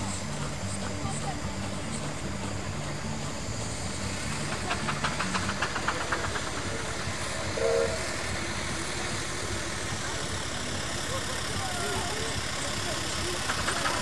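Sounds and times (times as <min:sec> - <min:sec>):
steam engine rumbling: 0:00.0 - 0:14.0.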